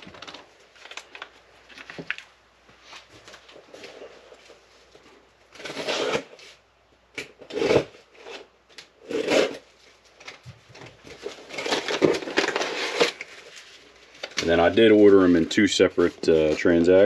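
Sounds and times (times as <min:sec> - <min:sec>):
packing material rustling in box: 0:09.1 - 0:17.0.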